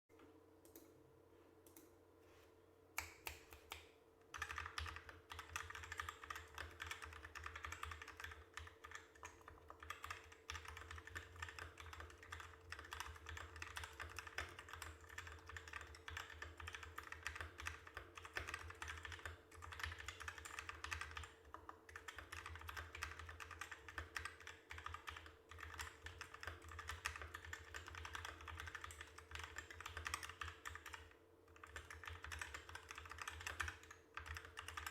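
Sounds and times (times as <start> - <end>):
mechanical keyboard typing: 4.3 - 34.9.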